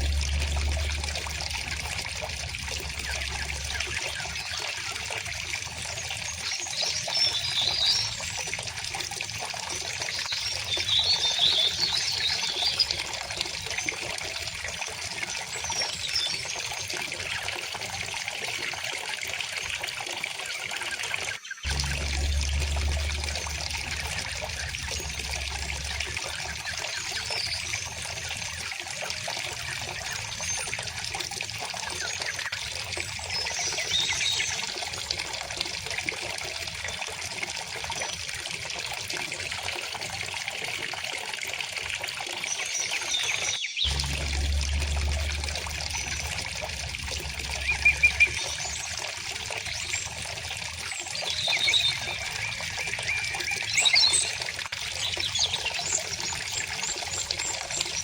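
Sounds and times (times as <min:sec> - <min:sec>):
stream flowing: 0:00.0 - 0:10.2, 0:21.6 - 0:32.3, 0:43.9 - 0:58.0
bird chirps: 0:47.2 - 0:50.1.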